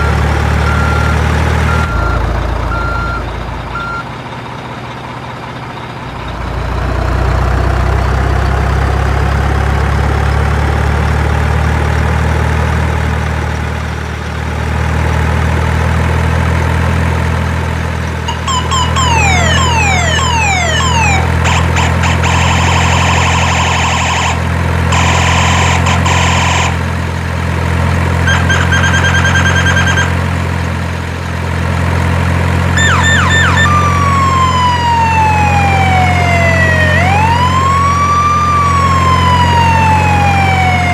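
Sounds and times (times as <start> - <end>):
electronic siren: 18.3 - 27.0, 28.2 - 30.2, 32.8 - 40.9.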